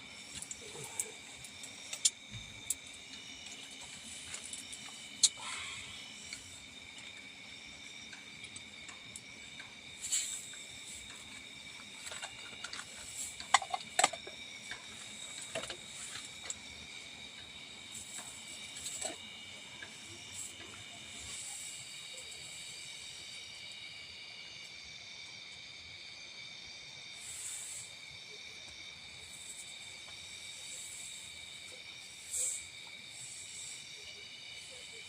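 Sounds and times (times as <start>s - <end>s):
high-pitched insect chorus: 0.0s - 35.0s
scattered clicks and knocks: 10.5s - 16.8s.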